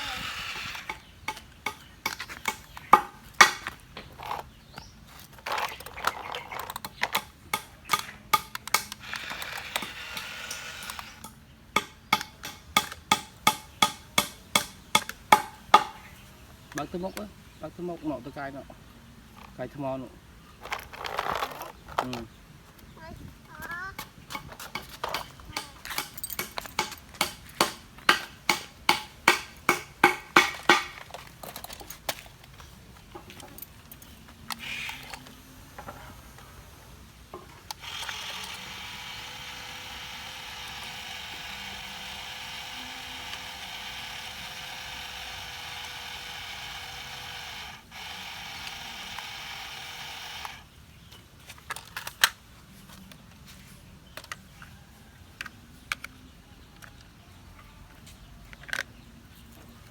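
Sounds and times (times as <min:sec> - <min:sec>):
small electric motor whirring: 0:00.0 - 0:02.6, 0:05.4 - 0:15.5, 0:34.5 - 0:37.0, 0:37.6 - 0:50.7
plastic ratchet clicks: 0:05.4 - 0:15.5, 0:37.6 - 0:50.6.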